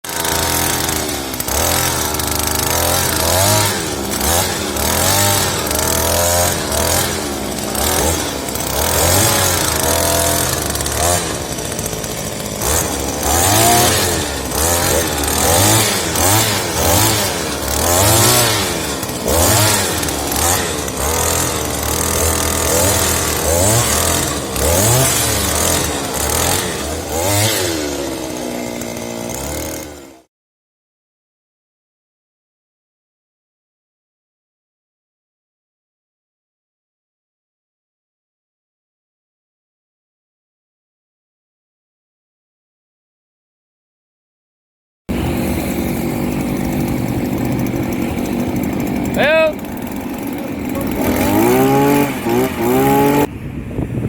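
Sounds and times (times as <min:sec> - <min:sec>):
earth auger engine revving: 0:00.0 - 0:30.3, 0:45.1 - 0:53.4.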